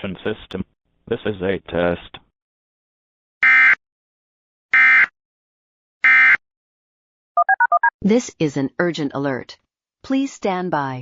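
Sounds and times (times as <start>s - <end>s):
short beeps: 7.4s - 7.9s.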